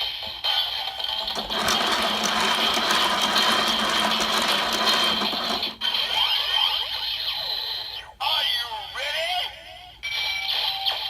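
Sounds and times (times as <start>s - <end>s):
toy drill blade whirring: 1.1s - 6.2s.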